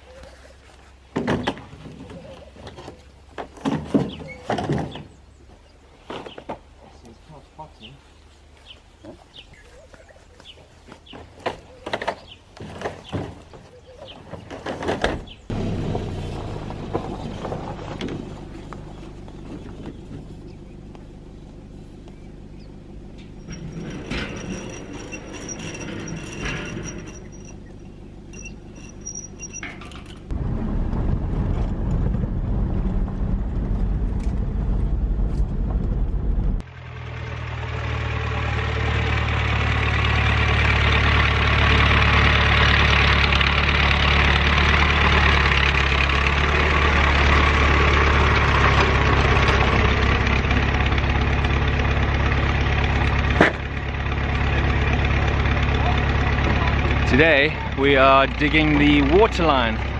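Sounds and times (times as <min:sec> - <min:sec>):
heavy diesel engine running: 0:15.5 - 0:59.9
high metallic squeaks: 0:23.2 - 0:30.3.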